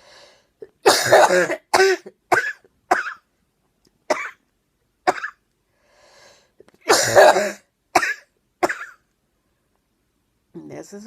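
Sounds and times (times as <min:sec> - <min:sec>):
person coughing: 0:00.6 - 0:03.2, 0:04.1 - 0:04.4, 0:05.1 - 0:05.4, 0:06.9 - 0:09.0.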